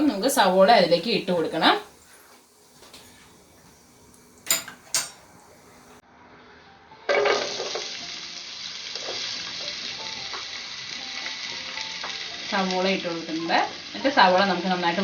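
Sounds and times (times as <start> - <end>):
onions sizzling in hot oil: 0.0 - 6.0, 7.1 - 15.0
utensil clinking on cookware: 4.0 - 5.9.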